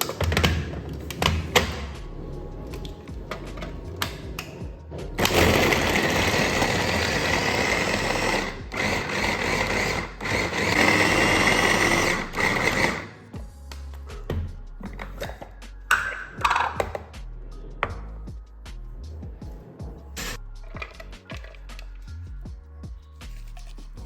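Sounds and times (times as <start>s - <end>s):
small electric motor running: 5.2s - 13.1s.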